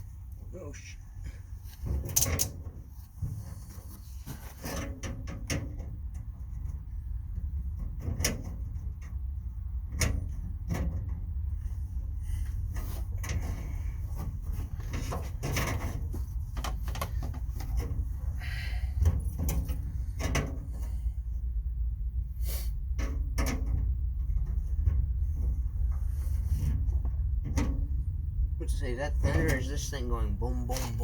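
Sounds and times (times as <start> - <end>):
steady low rumble: 0.0 - 31.0
metal knocks and clanks: 12.8 - 18.3.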